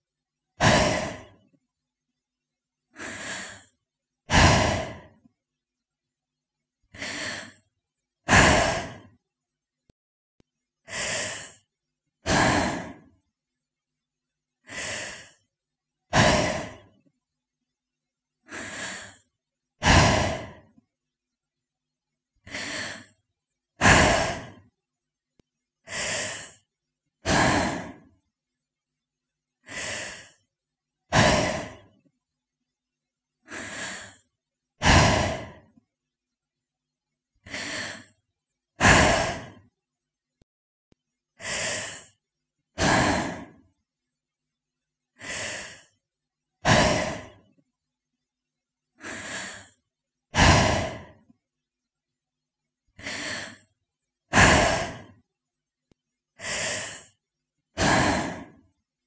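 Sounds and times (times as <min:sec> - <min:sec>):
woman breathing slowly: 0:00.6 - 0:01.6, 0:02.9 - 0:05.3, 0:06.9 - 0:07.7, 0:08.3 - 0:09.2, 0:10.8 - 0:13.1, 0:14.6 - 0:15.5, 0:16.1 - 0:17.1, 0:18.4 - 0:20.8, 0:22.4 - 0:23.2, 0:23.8 - 0:24.7, 0:25.8 - 0:28.2, 0:29.6 - 0:30.5, 0:31.1 - 0:32.1, 0:33.4 - 0:35.8, 0:37.4 - 0:38.2, 0:38.8 - 0:39.7, 0:41.4 - 0:43.6, 0:45.1 - 0:46.0, 0:46.6 - 0:47.6, 0:49.0 - 0:51.4, 0:52.9 - 0:53.7, 0:54.3 - 0:55.2, 0:56.3 - 0:58.7.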